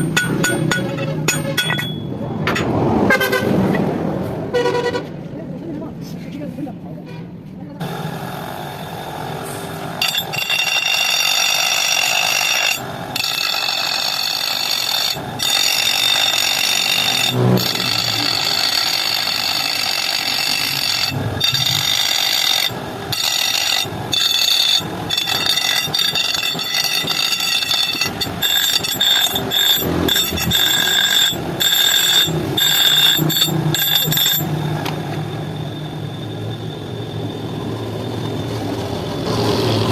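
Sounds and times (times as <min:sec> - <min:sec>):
angle grinder grinding metal: 0:09.6 - 0:39.9.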